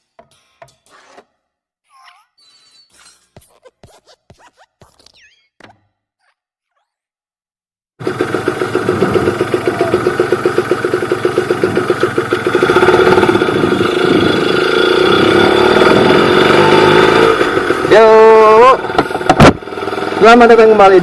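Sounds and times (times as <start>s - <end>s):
motorcycle engine pulsing: 8.0s - 21.0s.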